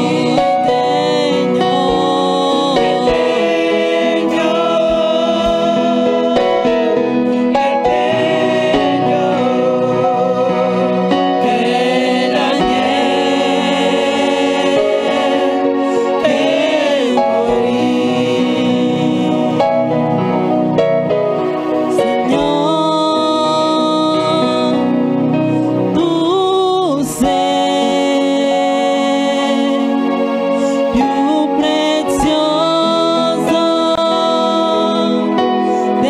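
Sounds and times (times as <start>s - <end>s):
instrumental backing: 0.0s - 36.0s
people singing worship song: 0.0s - 36.0s.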